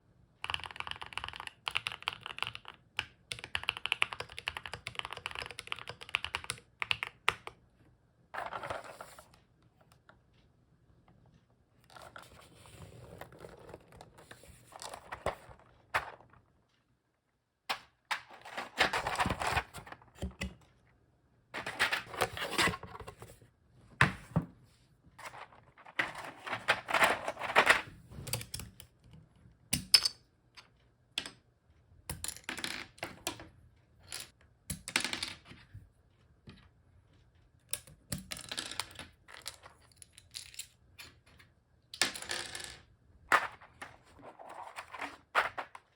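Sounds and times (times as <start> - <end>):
keycaps pressed onto keyboard: 0.4 - 7.6
plastic keycaps clattering: 25.2 - 27.8.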